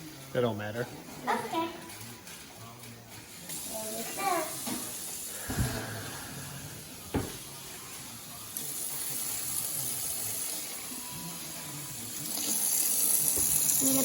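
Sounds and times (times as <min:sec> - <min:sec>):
knock: 0:07.1 - 0:07.4
tap running water into cup: 0:12.2 - 0:14.0.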